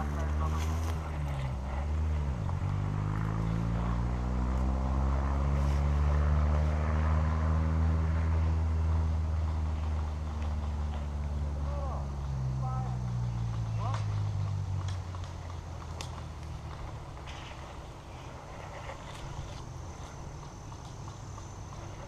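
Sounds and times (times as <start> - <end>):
engine drone: 0.0 - 22.0.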